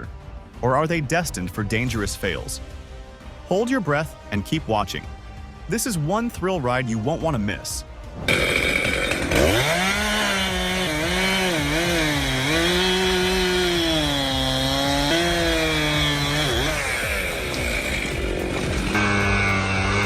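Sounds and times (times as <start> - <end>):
chainsaw cutting wood: 8.2 - 20.0.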